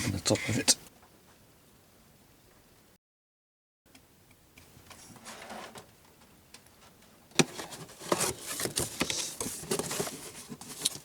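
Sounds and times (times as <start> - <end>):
cardboard rustling and scraping: 5.0 - 5.9, 7.4 - 11.0.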